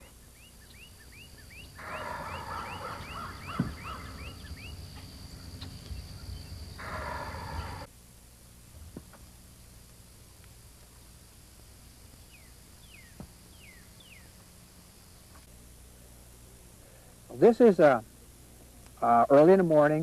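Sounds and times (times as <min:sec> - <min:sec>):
turkey gobbling: 0:01.8 - 0:04.4, 0:06.8 - 0:07.9.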